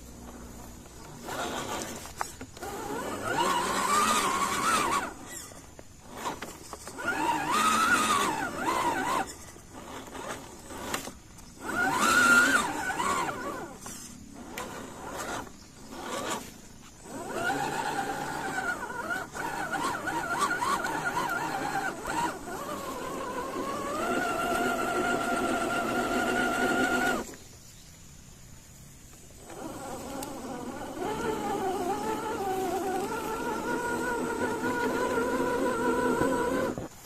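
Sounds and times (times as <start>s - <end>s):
rc car electric motor whining: 0.0s - 27.5s, 29.1s - 37.0s.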